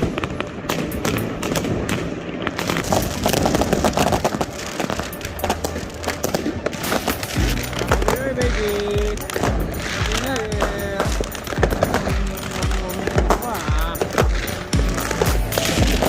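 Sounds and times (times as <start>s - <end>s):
fireworks and firecrackers: 0.0s - 16.0s.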